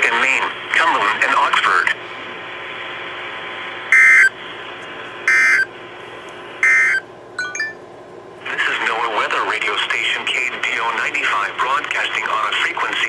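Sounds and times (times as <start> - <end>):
screechy digital data tones: 4.0 - 4.3, 5.3 - 5.7, 6.6 - 7.8.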